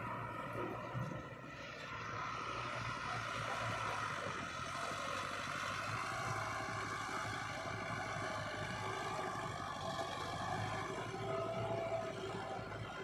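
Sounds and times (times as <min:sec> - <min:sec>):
heavy diesel engine running: 0:00.0 - 0:13.0.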